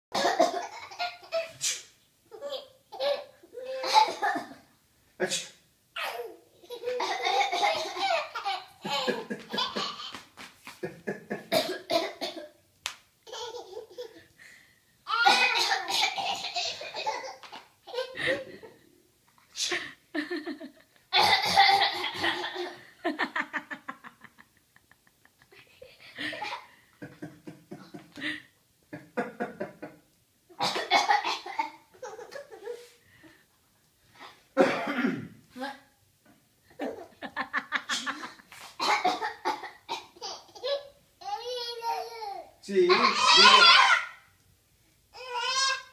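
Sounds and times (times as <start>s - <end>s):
baby laughing: 0.2s - 1.6s, 2.3s - 4.6s, 6.0s - 10.2s, 13.2s - 14.3s, 15.1s - 18.7s, 39.0s - 44.1s
person laughing: 8.8s - 10.1s
person coughing: 34.6s - 35.4s.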